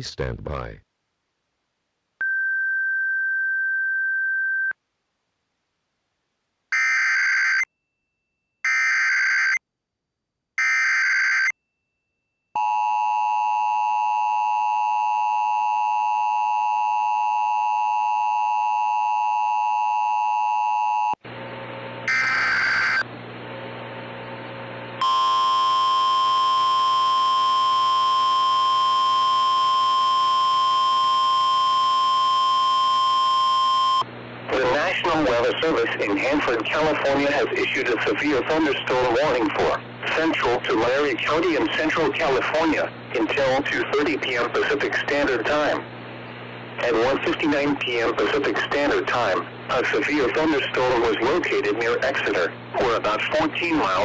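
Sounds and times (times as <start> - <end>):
data bursts: 22.1 - 23.0
steady beep: 22.1 - 23.0, 25.0 - 34.0
two-tone attention signal: 22.1 - 23.0, 25.0 - 34.0
loud steady single tone: 22.1 - 23.1, 25.0 - 34.6
noise: 22.1 - 23.1, 24.2 - 54.0.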